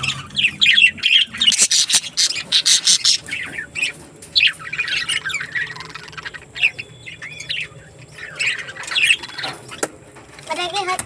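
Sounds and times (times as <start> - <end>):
budgerigars chattering: 0.0 - 10.4.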